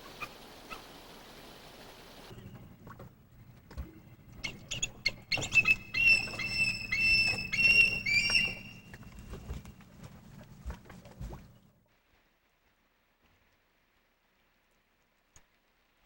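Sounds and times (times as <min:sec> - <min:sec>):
low steady hum: 0:00.0 - 0:16.0
high-pitched squeaky animal calls: 0:04.4 - 0:08.9.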